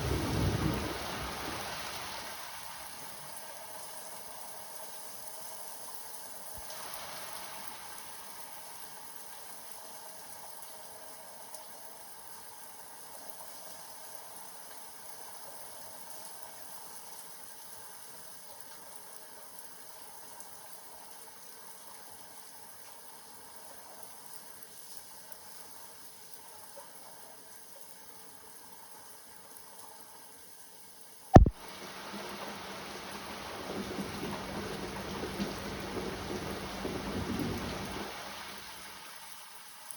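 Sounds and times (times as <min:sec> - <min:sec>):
rain: 0:00.0 - 0:39.9
sharp click: 0:31.4 - 0:31.6.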